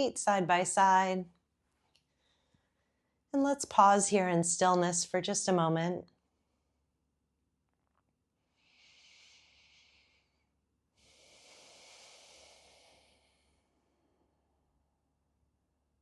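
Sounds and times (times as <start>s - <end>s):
faint slow breathing: 1.9s - 3.2s, 8.5s - 14.9s.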